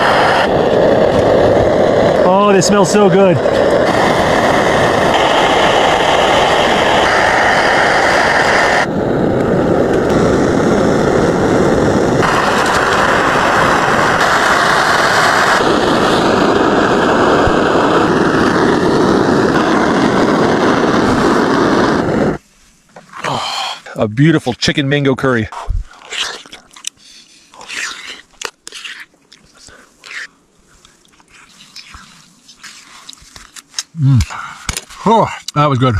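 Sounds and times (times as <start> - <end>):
food sizzling on a stove: 0.0 - 22.4.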